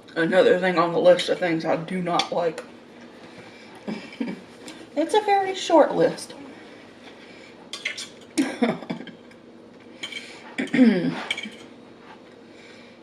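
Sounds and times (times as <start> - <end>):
cutlery clinking on a plate: 11.3 - 11.7.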